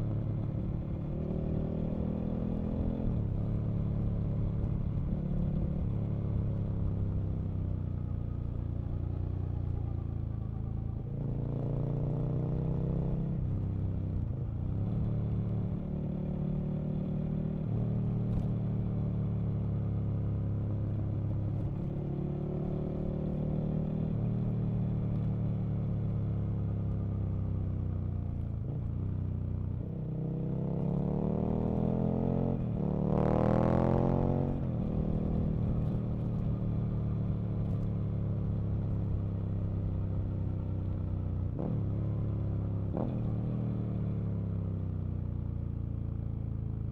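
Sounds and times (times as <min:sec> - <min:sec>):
motorcycle engine accelerating: 0:28.3 - 0:46.9.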